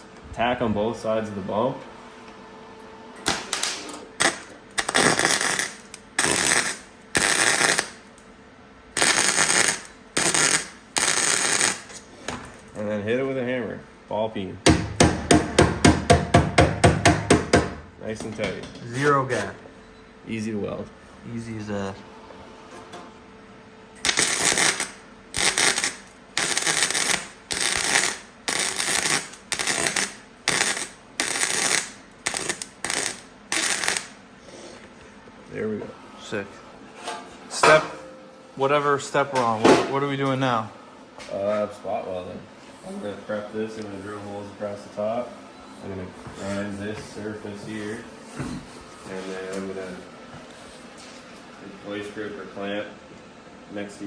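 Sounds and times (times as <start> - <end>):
crackling welding arc: 3.2 - 8.1, 8.9 - 12.0, 24.0 - 34.2.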